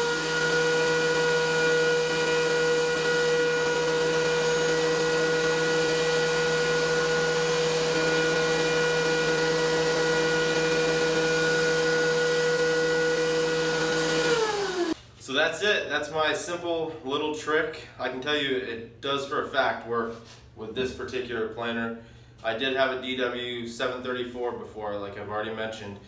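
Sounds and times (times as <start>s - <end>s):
thickness planer whining: 0.0s - 15.0s.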